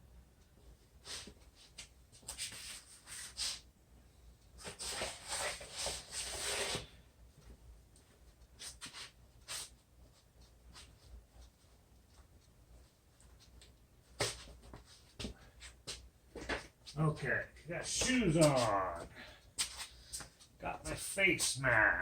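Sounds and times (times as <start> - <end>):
shoes rubbing and scuffing: 14.1 - 17.0.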